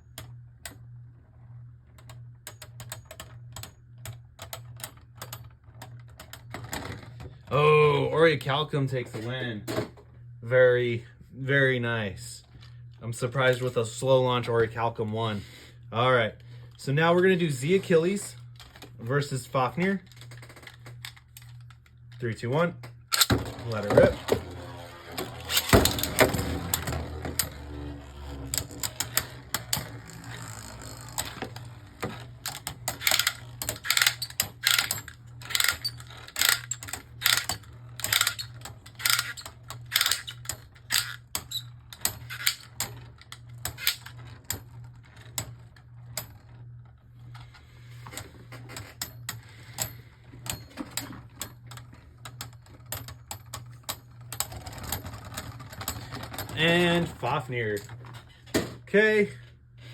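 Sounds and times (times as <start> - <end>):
steady low hum: 0.0 - 59.9
spinning tops colliding: 23.2 - 31.9.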